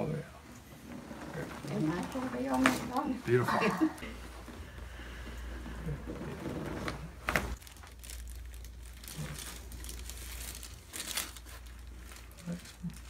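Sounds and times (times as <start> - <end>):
crinkling on treatment table: 0.9 - 3.1, 6.4 - 13.0.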